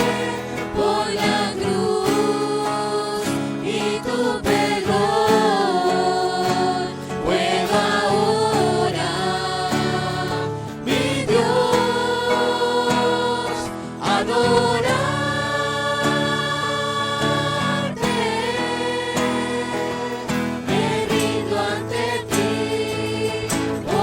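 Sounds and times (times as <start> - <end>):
instrumental accompaniment: 0.0 - 24.0
several voices singing: 0.0 - 24.0.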